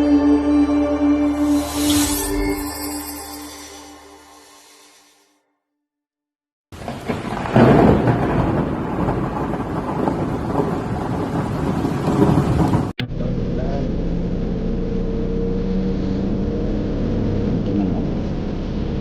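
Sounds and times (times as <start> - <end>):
car road rumble: 13.0 - 19.0
low engine hum: 13.0 - 19.0.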